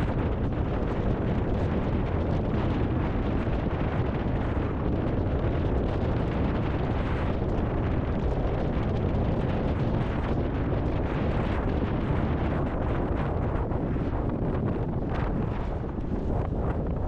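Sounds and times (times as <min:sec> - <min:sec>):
wind buffeting microphone: 0:00.0 - 0:17.0.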